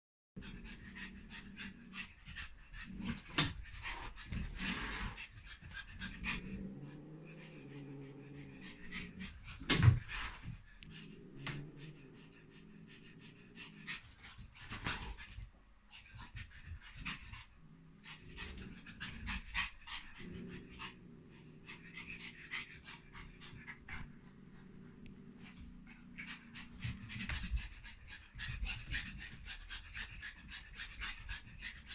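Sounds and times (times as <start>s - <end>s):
dog panting: 7.7s - 31.9s.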